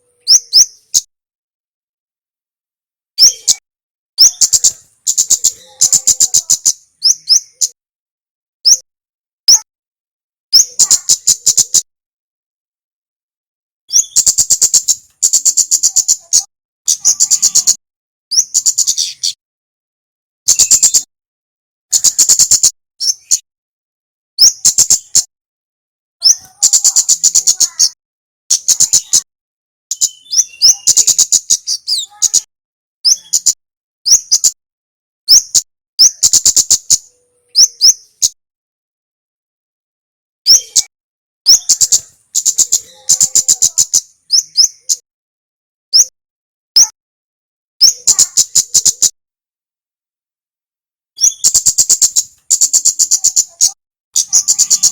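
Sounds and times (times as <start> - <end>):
bird upward-sweeping chirps: 29.9 - 32.5, 51.2 - 54.9.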